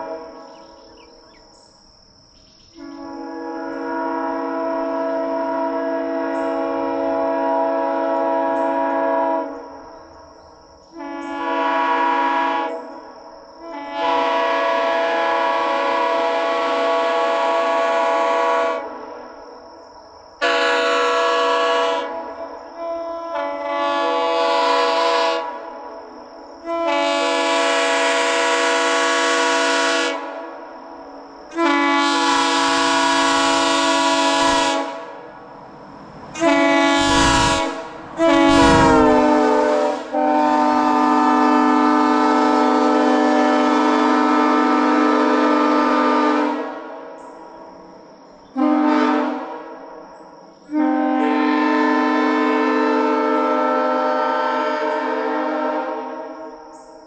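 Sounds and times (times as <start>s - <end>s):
air horn chord blasts: 36.4s - 41.0s.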